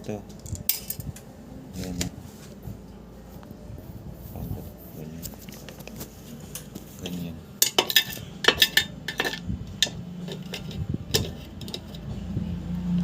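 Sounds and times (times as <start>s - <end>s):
metal parts clinking: 7.6s - 12.0s.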